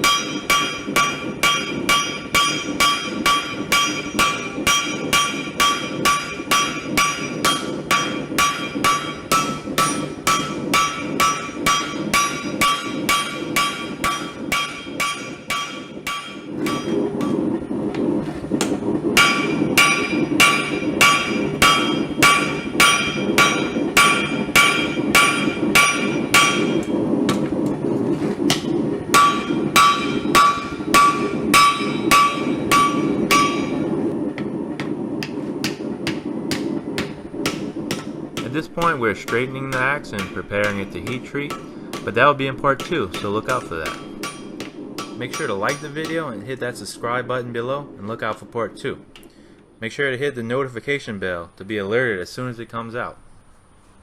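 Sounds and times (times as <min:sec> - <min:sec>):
hammer ringing on anvil: 0:00.0 - 0:17.4, 0:19.2 - 0:26.9, 0:28.5 - 0:33.9, 0:37.5 - 0:42.2, 0:42.8 - 0:46.3
steady rushing noise: 0:00.0 - 0:54.0.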